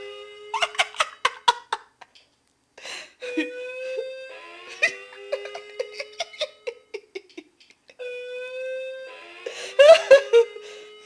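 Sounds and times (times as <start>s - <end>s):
distorted doorbell chime: 8.0s - 11.0s.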